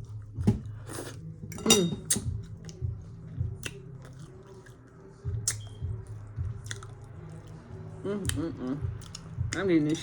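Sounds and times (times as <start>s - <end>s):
utensils clinking against dish: 1.4s - 2.3s.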